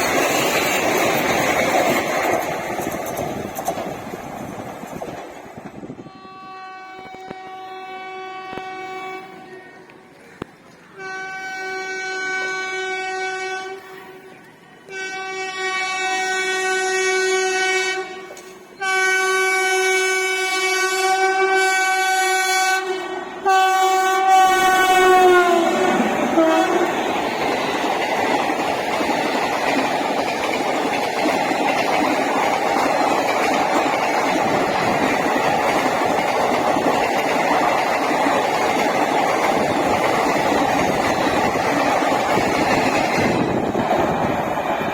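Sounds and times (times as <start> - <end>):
train wheels clattering on rails: 0.0 - 6.0, 24.8 - 44.9
locomotive horn blasts: 6.0 - 9.5, 11.0 - 27.0.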